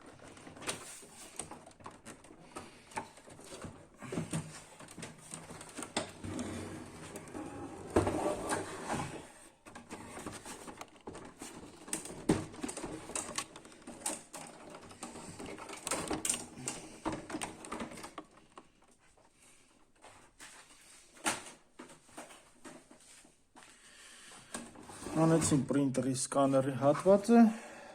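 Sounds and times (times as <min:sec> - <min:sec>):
plastic printer housing clicks and rattles: 0:00.1 - 0:06.2, 0:09.6 - 0:18.7.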